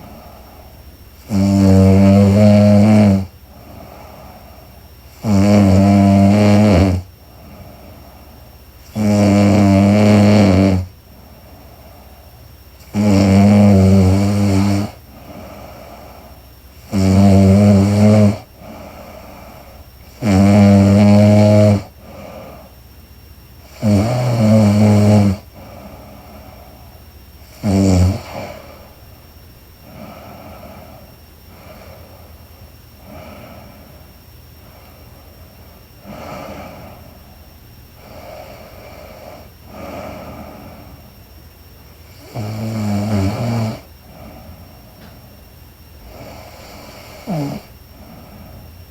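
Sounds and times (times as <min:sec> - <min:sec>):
woman snoring: 0:00.0 - 0:04.4, 0:05.1 - 0:08.1, 0:08.8 - 0:10.9, 0:12.8 - 0:22.8, 0:23.6 - 0:29.0, 0:29.8 - 0:32.2, 0:33.0 - 0:34.0, 0:36.0 - 0:37.2, 0:38.0 - 0:41.1, 0:42.0 - 0:45.1, 0:46.0 - 0:48.8
quiet breaths: 0:00.0 - 0:48.9.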